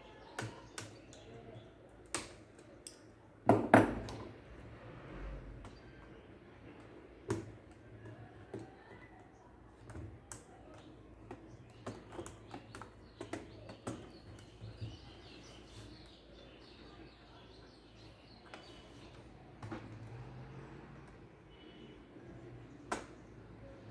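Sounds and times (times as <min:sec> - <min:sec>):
small laptop parts clicking: 0:00.4 - 0:03.1.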